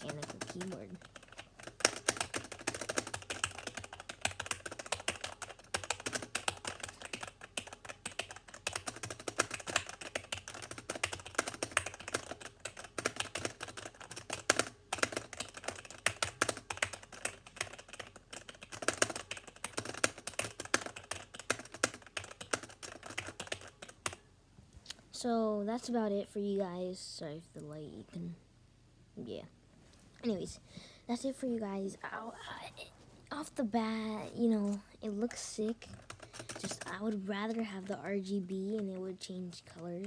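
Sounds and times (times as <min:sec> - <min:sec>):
fast typing on keyboard: 0:00.0 - 0:24.2, 0:34.6 - 0:40.0.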